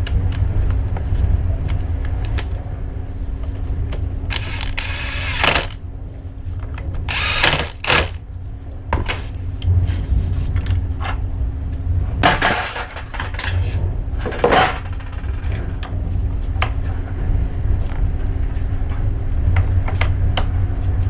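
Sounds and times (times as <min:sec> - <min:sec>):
steady low hum: 0:00.0 - 0:21.0
power tool bursts: 0:04.3 - 0:05.8, 0:07.1 - 0:08.2.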